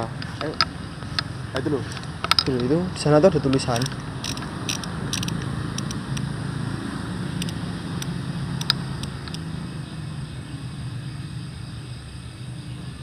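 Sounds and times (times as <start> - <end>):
vehicle engine rumbling: 0.0 - 13.0
faint clicks: 7.4 - 9.4.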